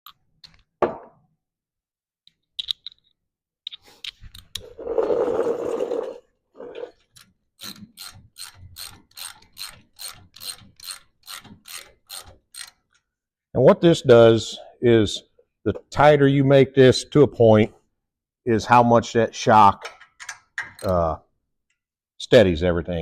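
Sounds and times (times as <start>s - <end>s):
ratchet rasping: 7.6s - 12.8s
ratchet wrench clicking: 7.6s - 12.8s.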